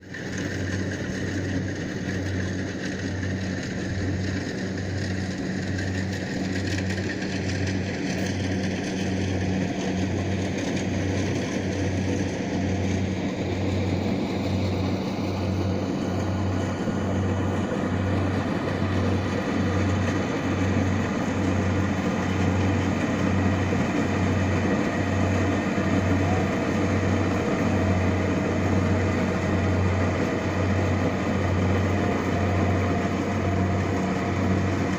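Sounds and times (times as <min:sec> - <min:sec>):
combine harvester running: 0:00.0 - 0:34.9.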